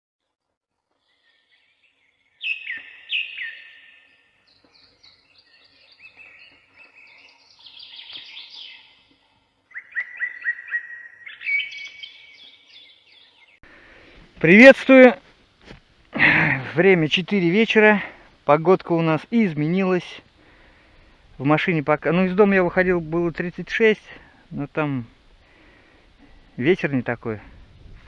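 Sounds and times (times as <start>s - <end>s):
songbirds singing and chirping: 1.1s - 14.1s
falling whistled bird notes: 2.4s - 4.1s, 9.7s - 13.1s.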